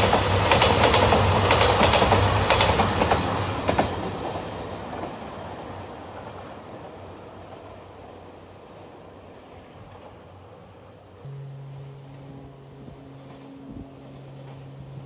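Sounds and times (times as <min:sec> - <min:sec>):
wheels clicking over rail joints: 0:00.0 - 0:05.2
diesel train passing: 0:00.0 - 0:15.0.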